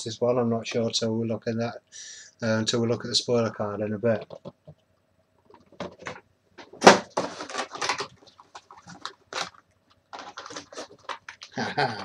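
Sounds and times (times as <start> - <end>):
packaging being opened: 6.8 - 12.0.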